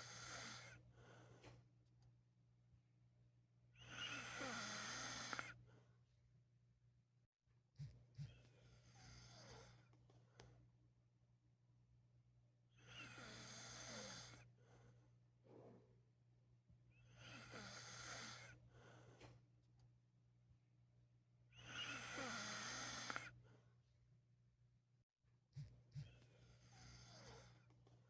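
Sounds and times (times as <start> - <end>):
faint breaths: 0.0 - 1.7, 17.0 - 19.5, 25.5 - 27.9
person snoring: 4.0 - 5.5, 21.6 - 23.3.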